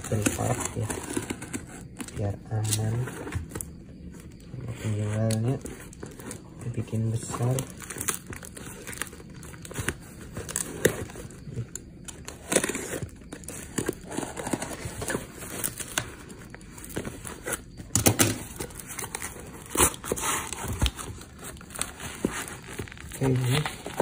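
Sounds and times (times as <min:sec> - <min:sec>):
parcel wrapping tearing and crinkling: 0:00.0 - 0:24.0.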